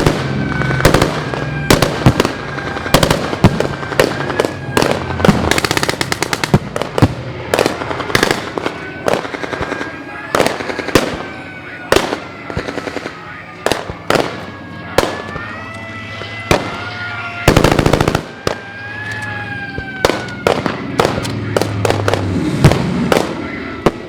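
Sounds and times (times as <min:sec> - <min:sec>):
gunfire bangs: 0:00.0 - 0:15.5, 0:16.2 - 0:18.7
wavering siren: 0:00.0 - 0:24.0
machine-gun burst: 0:17.5 - 0:18.3.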